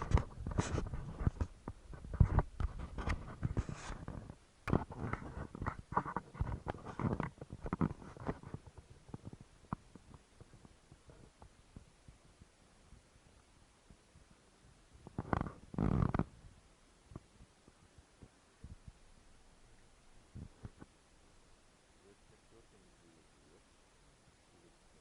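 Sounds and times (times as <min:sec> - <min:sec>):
objects being handled: 0:00.0 - 0:11.6.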